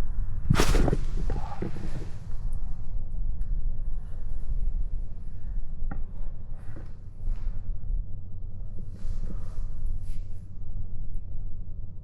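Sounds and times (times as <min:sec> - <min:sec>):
wind buffeting microphone: 0:00.0 - 0:05.3
brief rustle: 0:00.5 - 0:02.2.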